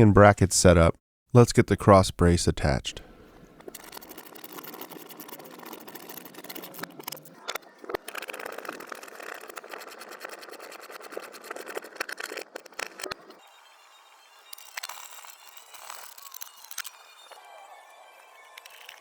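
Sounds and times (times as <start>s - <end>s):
mechanical clattering and clicking: 3.6s - 13.2s
power tool motor whirr: 3.6s - 19.0s.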